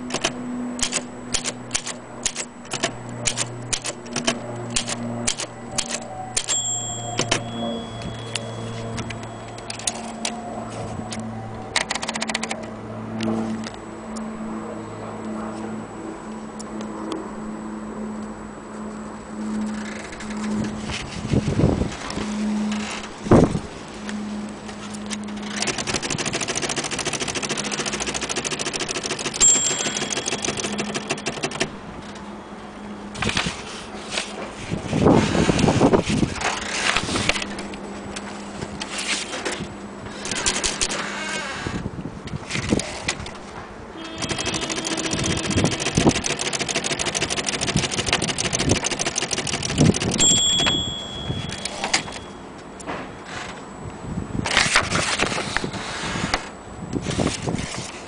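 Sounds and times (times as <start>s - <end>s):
typewriter keys clacking: 0.1s - 10.4s, 11.8s - 12.6s, 25.4s - 31.7s, 40.2s - 40.9s, 44.0s - 52.3s
typewriter bell ding: 5.3s - 10.3s, 26.1s - 31.7s, 44.0s - 52.5s.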